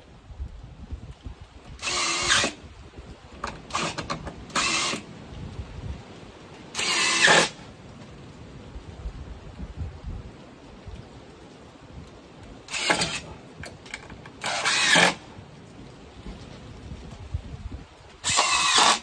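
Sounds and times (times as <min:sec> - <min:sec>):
power drill bursts: 0:01.8 - 0:02.6, 0:03.7 - 0:05.0, 0:06.8 - 0:07.6, 0:12.7 - 0:13.3, 0:14.4 - 0:15.2, 0:18.2 - 0:19.0.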